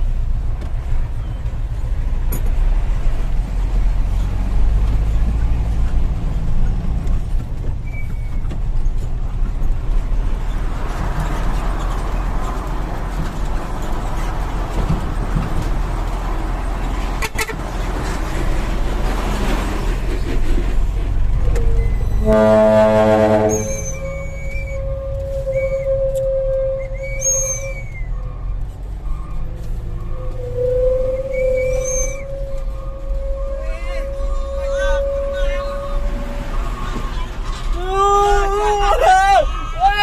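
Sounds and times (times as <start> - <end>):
diesel truck engine rumbling: 0.0 - 40.0
air horn blowing: 17.2 - 17.6, 22.2 - 27.6, 30.2 - 36.9.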